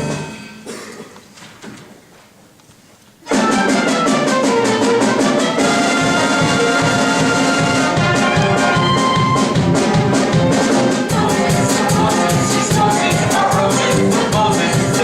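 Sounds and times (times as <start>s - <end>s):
trumpets and trombones: 3.2s - 15.0s
steady drum beat: 3.3s - 15.0s.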